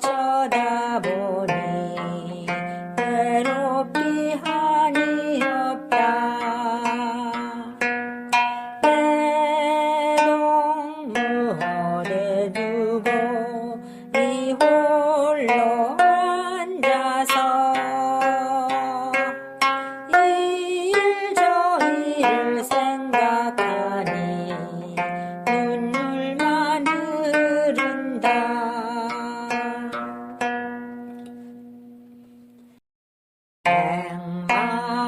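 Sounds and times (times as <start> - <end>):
plucked zither melody: 0.0 - 32.7, 33.7 - 35.0.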